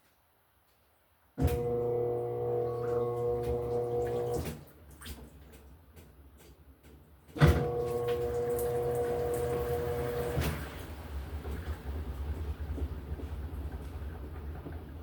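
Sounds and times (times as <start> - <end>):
washing machine motor clunk: 1.4 - 4.6, 7.3 - 11.8
washing machine motor hum: 1.4 - 4.7, 7.4 - 15.0
washing machine low rumble: 1.4 - 15.0.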